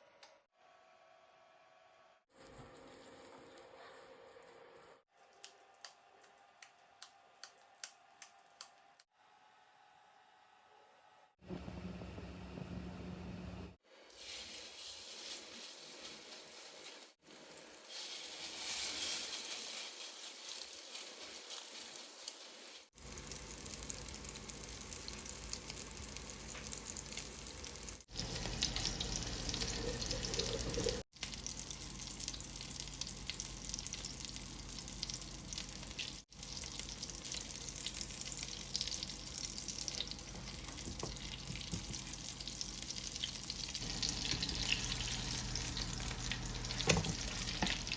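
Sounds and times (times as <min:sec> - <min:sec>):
food frying in oil: 0:14.1 - 0:47.9.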